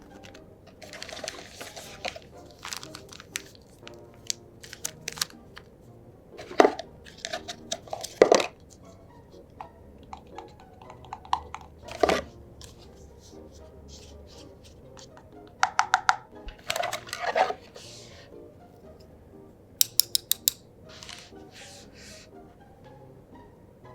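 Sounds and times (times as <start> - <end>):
packaging crinkling and rustling: 0.2 - 5.7.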